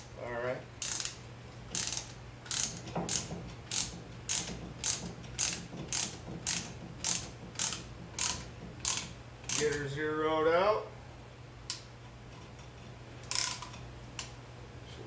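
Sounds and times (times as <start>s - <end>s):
ratchet tool clicking: 0.8s - 9.9s, 13.2s - 14.3s.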